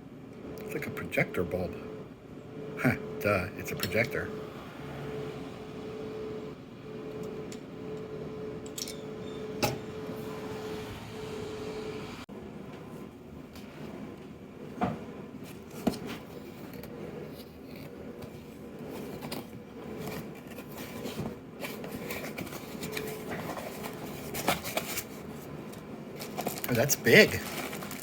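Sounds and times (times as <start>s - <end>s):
handling noise scraping and rustling: 14.8s - 28.0s.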